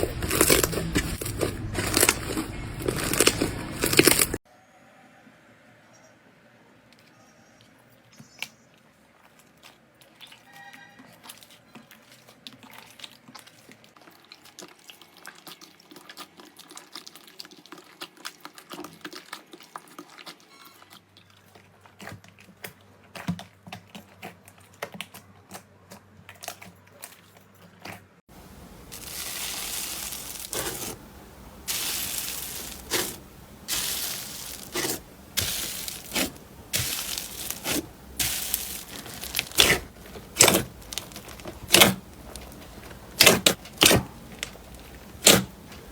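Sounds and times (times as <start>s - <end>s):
slime squishing and squelching: 0.0s - 4.4s, 8.3s - 45.9s.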